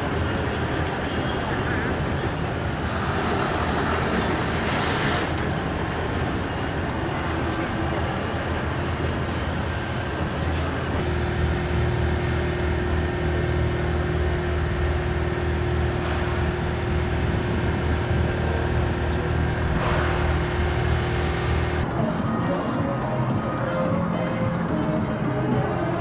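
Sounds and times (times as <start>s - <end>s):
constant higher whine: 2.6s - 26.0s
engine low hum: 2.8s - 5.8s, 11.0s - 26.0s.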